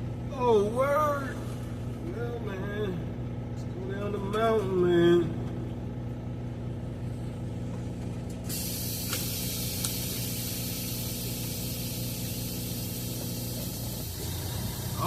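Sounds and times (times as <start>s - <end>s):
truck engine idling: 0.0s - 15.0s
loud hiss of air: 8.5s - 15.0s.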